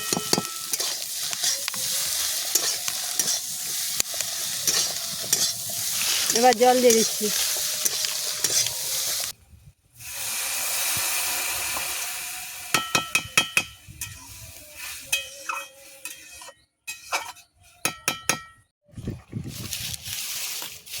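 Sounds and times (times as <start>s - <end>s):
metal spoon clinking on pan: 0.0s - 1.6s
water sizzling in hot pan: 0.0s - 9.4s, 10.0s - 15.2s.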